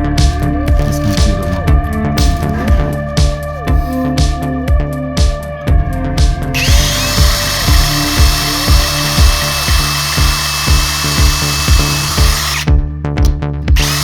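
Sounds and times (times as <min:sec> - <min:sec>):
electronic music with kick drum: 0:00.0 - 0:14.0
power drill whining: 0:06.5 - 0:12.7, 0:13.8 - 0:14.0.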